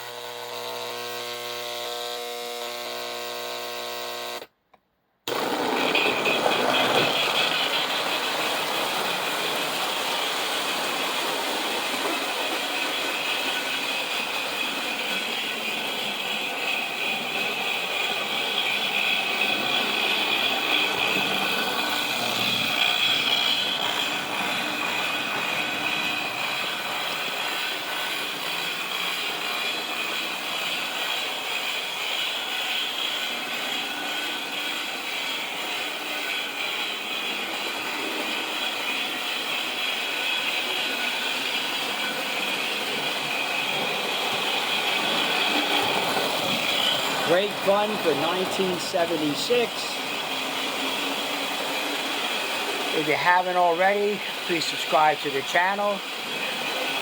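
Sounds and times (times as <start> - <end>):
toy train wheels and motor clatter: 0.0 - 4.6, 5.2 - 57.0
electronic steam chuffing: 35.2 - 57.0.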